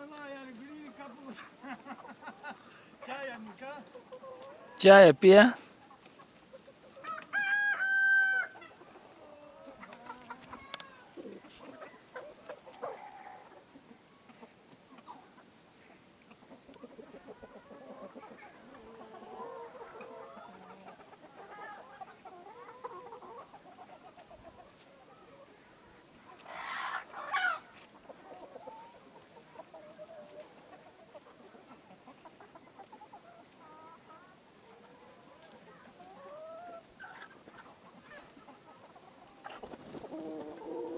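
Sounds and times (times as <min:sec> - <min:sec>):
chickens clucking: 0:26.3 - 0:40.9.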